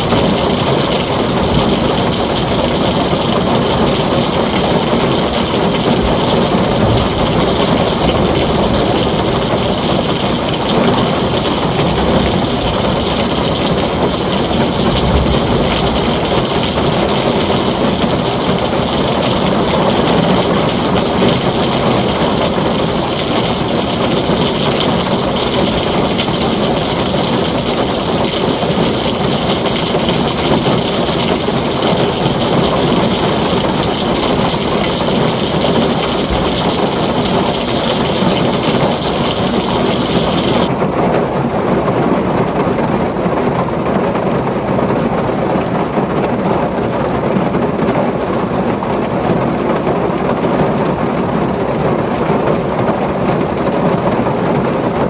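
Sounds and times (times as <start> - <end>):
heavy rain on a tin roof: 0.0 - 55.0
low rumble: 5.7 - 10.4, 11.2 - 18.2.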